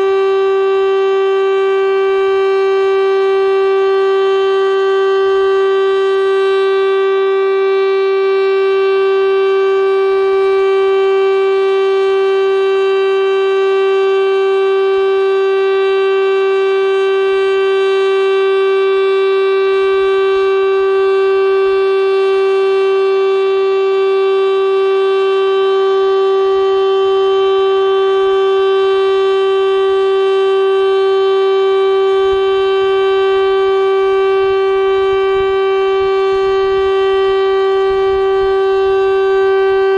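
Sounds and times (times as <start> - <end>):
tornado siren steady tone: 0.0 - 39.9.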